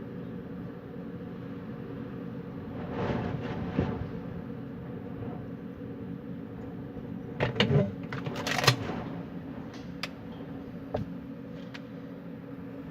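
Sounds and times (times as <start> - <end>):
low hum: 0.0 - 12.9
wind blowing: 1.4 - 8.1.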